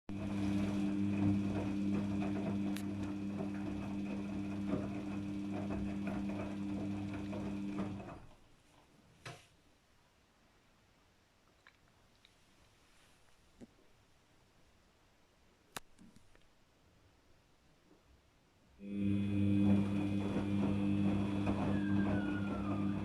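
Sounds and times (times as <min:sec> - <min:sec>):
washing machine humming and rattling: 0:00.1 - 0:08.4, 0:18.8 - 0:23.0
click: 0:02.7 - 0:03.1.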